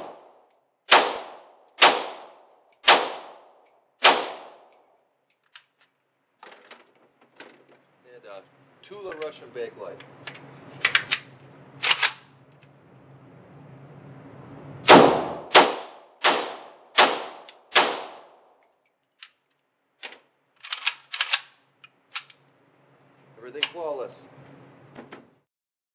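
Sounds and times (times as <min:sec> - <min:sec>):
rifle shots: 0:00.0 - 0:04.7, 0:14.8 - 0:18.4.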